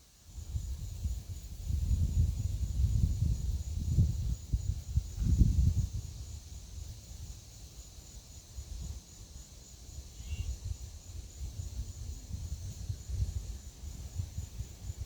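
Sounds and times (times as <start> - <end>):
insects droning: 0.0 - 15.0
wind gusting against microphone: 0.3 - 7.4, 10.2 - 15.0
bird chirp: 10.2 - 10.6.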